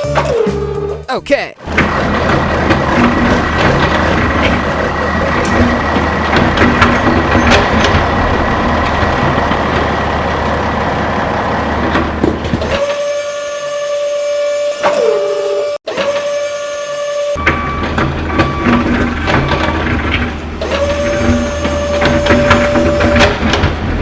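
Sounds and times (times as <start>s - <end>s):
rumbling machine noise: 1.6s - 13.0s, 17.4s - 24.0s.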